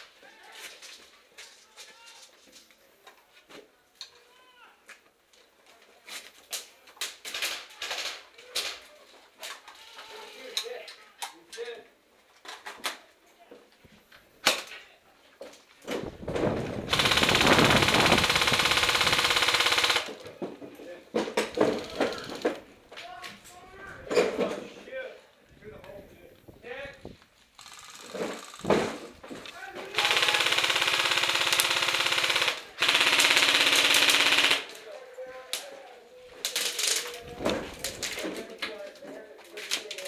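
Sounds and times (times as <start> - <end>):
airsoft gun full-auto rattle: 16.9 - 20.3, 27.5 - 28.9, 29.9 - 34.7.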